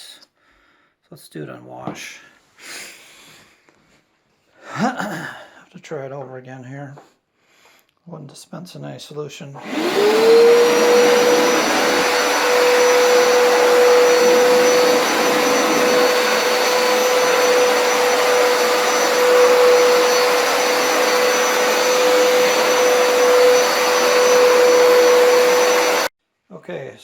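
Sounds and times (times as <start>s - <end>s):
carpet cleaner motor whine: 9.6s - 26.1s
suction rushing: 9.6s - 26.1s.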